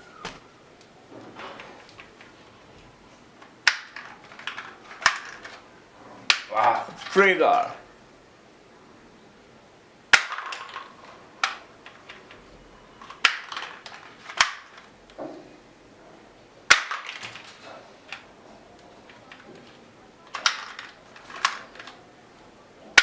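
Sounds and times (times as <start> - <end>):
plastic toy gun clacks: 3.4 - 5.6, 10.1 - 12.4, 13.0 - 14.9, 16.7 - 18.3, 19.1 - 22.0.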